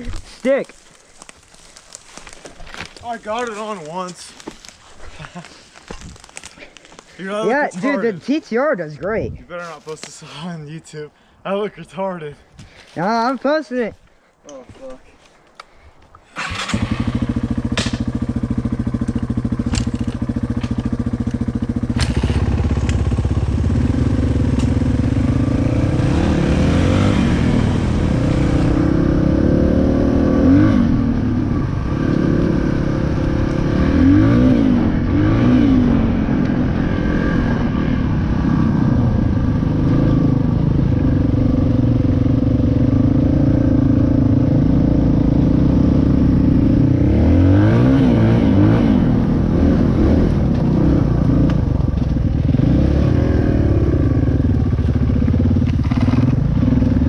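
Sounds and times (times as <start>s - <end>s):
dirt bike engine revving: 16.4s - 51.5s, 52.3s - 57.0s.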